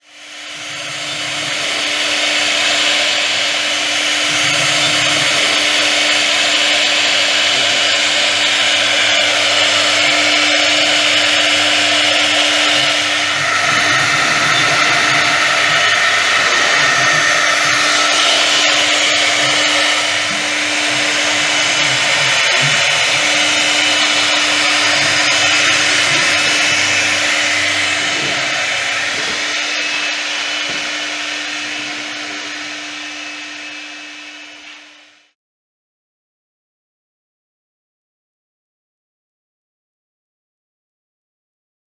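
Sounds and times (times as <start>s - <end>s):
router spindle whine: 0.0s - 35.3s
cutting hiss: 0.2s - 32.8s.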